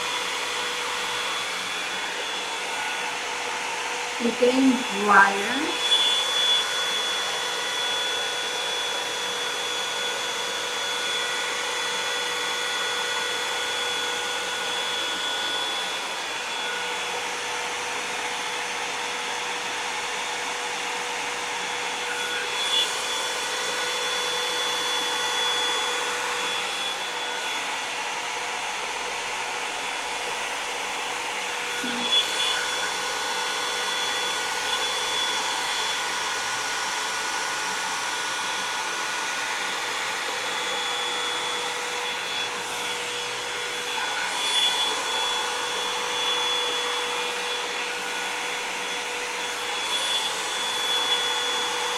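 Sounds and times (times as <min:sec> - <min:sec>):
hot-air brush dryer running: 0:00.0 - 0:51.9.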